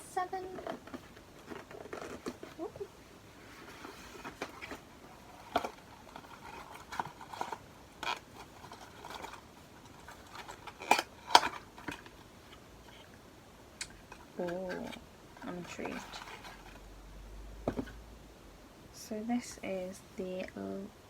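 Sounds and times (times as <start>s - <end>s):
packaging taps scrapes and rustles: 3.6s - 13.0s.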